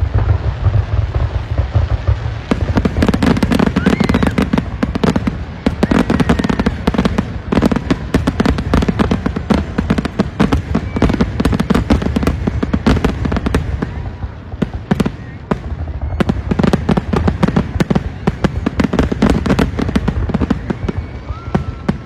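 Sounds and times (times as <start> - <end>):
low rumble of booms: 0.0 - 18.2
fireworks cracks and bangs: 0.0 - 22.0.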